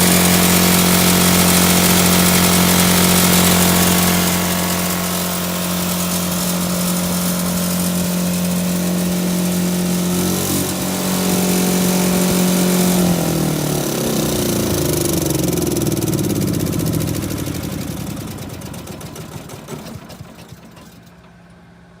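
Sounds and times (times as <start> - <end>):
welder engine running: 0.0 - 21.6.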